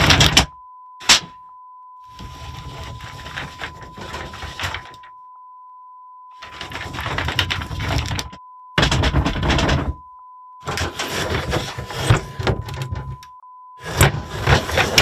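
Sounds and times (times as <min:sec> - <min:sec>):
wooden sliding door scraping: 0:00.0 - 0:00.4, 0:02.2 - 0:05.0, 0:06.4 - 0:10.0, 0:10.7 - 0:13.2, 0:13.8 - 0:15.0.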